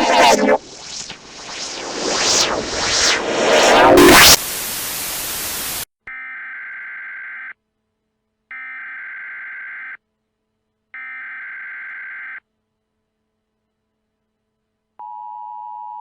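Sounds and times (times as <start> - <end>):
digital data tones: 0.0 - 4.4
loud static burst: 0.0 - 5.9.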